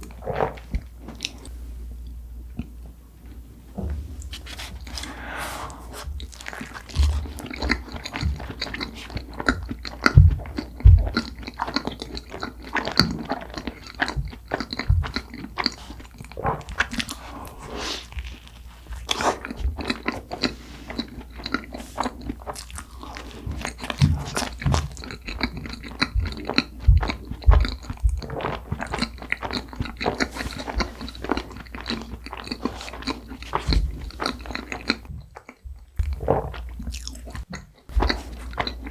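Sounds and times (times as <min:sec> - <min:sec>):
wet chewing: 0:04.2 - 0:38.9
short low thumps: 0:10.2 - 0:11.2.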